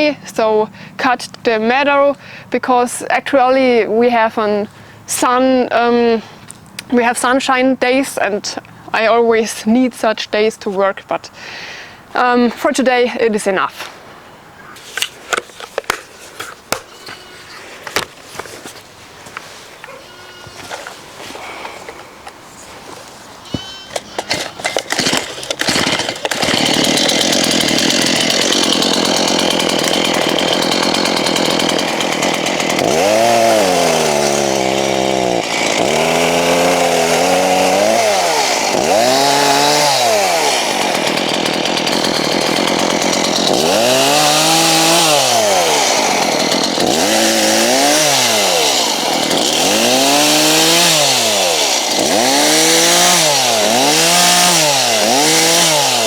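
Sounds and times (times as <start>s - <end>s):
chainsaw engine revving: 23.9s - 56.0s.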